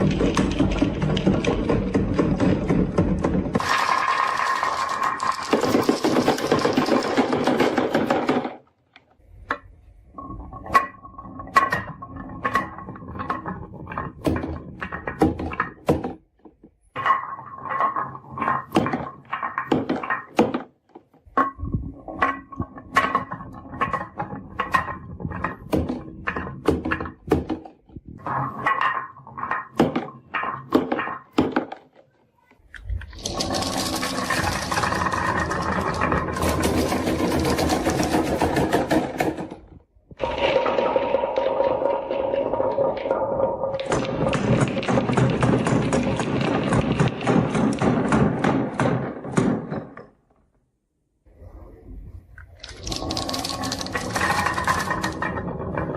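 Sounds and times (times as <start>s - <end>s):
marbles clattering down wooden run: 0.0s - 8.6s, 33.0s - 39.6s, 40.2s - 49.2s, 52.6s - 55.9s.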